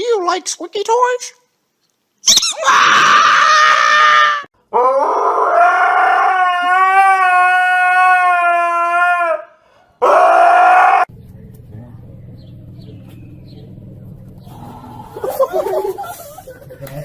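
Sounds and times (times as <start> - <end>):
dog howling: 2.6 - 11.1.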